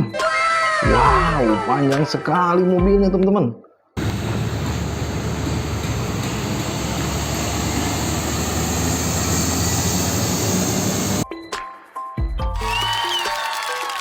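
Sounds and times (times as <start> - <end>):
heavy vehicle engine running: 4.0 - 11.2.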